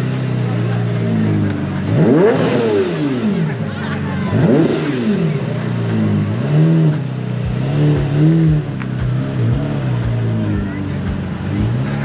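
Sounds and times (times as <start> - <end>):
car engine revving: 0.0 - 12.0
regular low thump: 7.0 - 11.8.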